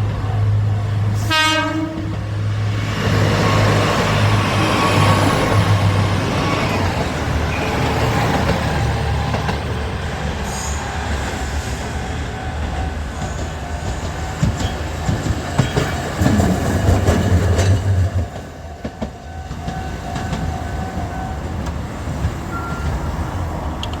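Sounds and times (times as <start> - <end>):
rail vehicles rumbling past: 0.0 - 24.0
wheels clacking over rail joints: 12.6 - 23.1.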